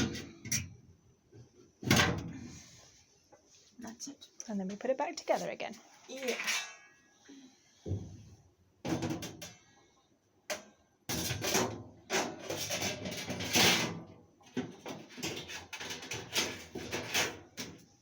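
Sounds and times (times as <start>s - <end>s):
metal parts clanking and rattling: 11.1s - 14.0s, 14.7s - 17.7s.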